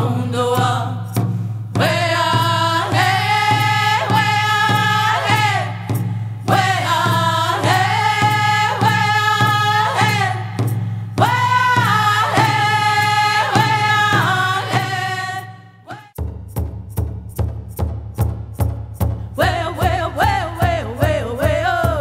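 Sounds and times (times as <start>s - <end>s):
singing over drum beat: 0.0s - 16.3s, 19.4s - 22.0s
deep bass and sharp drums: 16.2s - 22.0s.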